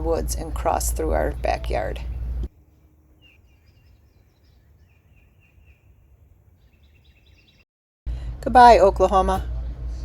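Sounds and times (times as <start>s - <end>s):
bird chirping: 1.3s - 7.6s.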